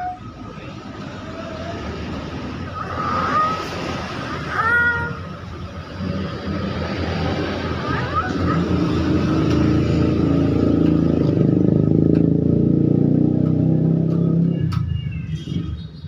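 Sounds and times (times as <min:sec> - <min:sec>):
vehicle engine running: 0:05.4 - 0:15.8
bird chirping: 0:14.2 - 0:16.0.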